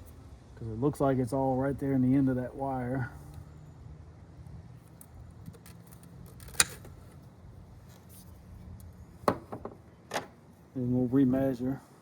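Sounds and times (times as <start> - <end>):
cable snapping: 5.0 - 6.9.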